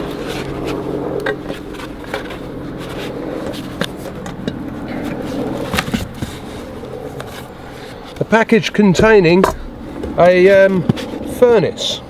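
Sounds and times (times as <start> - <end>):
cardboard package handled: 0.0 - 8.3
scraping: 0.0 - 11.3
steady low hum: 0.0 - 12.0.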